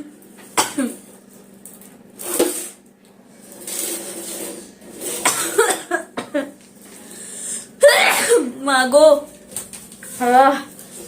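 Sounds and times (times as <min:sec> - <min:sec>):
woman sneezing: 0:07.7 - 0:08.6.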